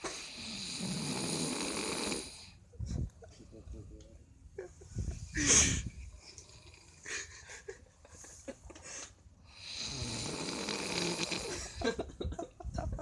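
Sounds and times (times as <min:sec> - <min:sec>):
person snoring: 0:00.0 - 0:02.6, 0:09.5 - 0:11.8.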